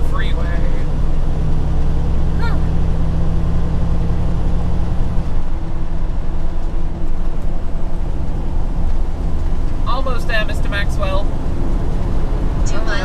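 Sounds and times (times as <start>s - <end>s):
road noise inside cab: 0.0s - 13.0s
truck diesel engine hum: 0.0s - 13.0s.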